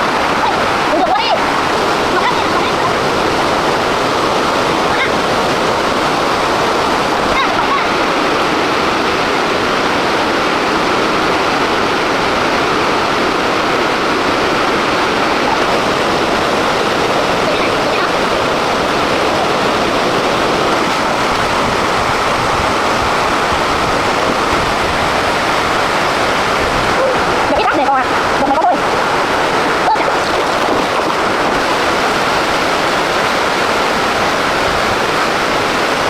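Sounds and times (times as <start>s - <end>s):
rushing water: 0.0s - 36.0s.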